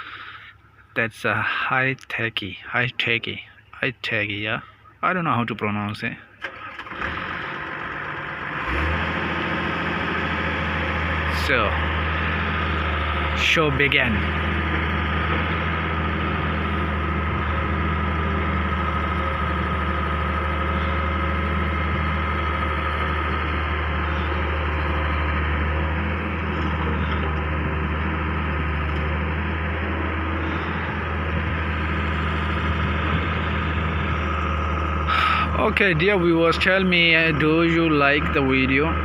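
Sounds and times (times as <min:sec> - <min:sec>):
diesel engine droning: 0:00.0 - 0:39.0
high whine: 0:11.3 - 0:38.2.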